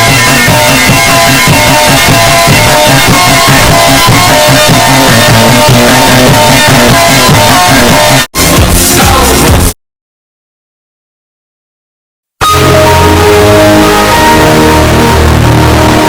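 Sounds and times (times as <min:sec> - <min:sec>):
loud rock music: 0:00.0 - 0:09.8, 0:12.4 - 0:16.0.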